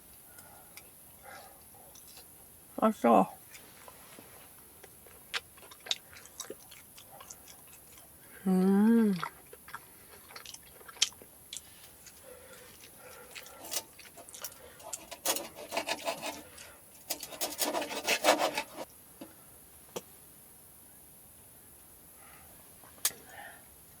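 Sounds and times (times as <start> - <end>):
eating noises: 3.4 - 15.4
crackly clicking and rubbing: 9.5 - 18.9.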